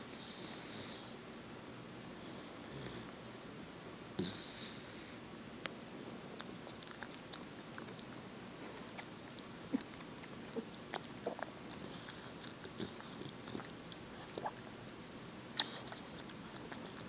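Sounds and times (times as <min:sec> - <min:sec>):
puppy chewing and smacking: 0:06.4 - 0:14.7, 0:15.6 - 0:17.0.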